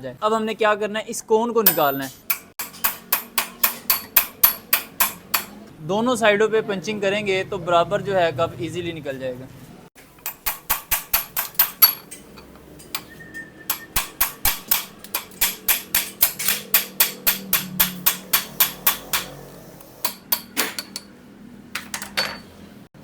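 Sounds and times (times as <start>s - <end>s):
hammer striking metal punch: 1.7s - 5.6s, 10.2s - 19.4s, 20.0s - 21.1s.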